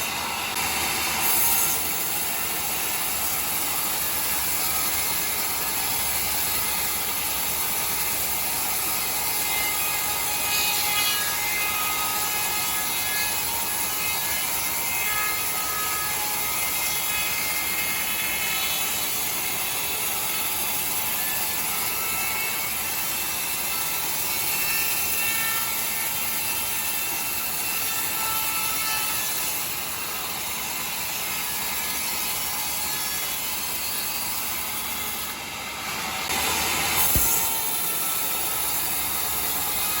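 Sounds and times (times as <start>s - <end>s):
sawmill saw cutting timber: 0.0s - 40.0s.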